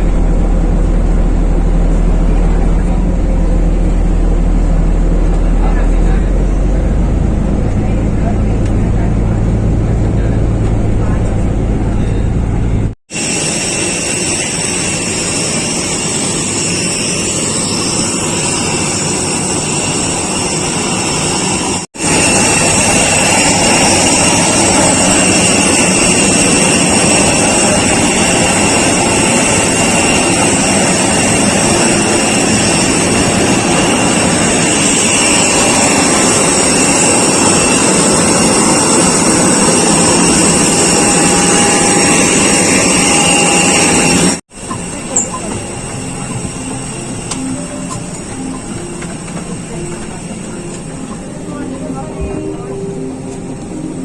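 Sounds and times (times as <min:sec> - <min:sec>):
jet engine roar in cabin: 0:00.0 - 0:54.0
thin high whine: 0:11.9 - 0:54.0.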